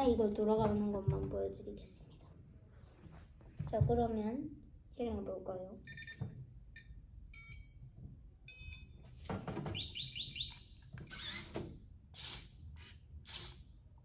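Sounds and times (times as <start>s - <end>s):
electronic beeps and chirps: 9.8s - 10.8s.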